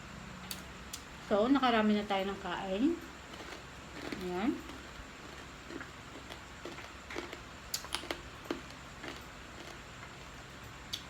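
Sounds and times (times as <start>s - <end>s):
person chewing food: 3.0s - 11.0s.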